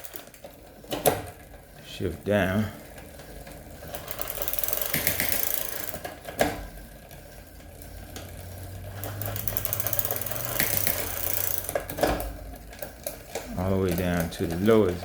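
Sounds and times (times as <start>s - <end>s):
bike chain ticking: 0.0s - 15.0s
chain shifting gear clack: 3.8s - 6.1s, 8.1s - 15.0s.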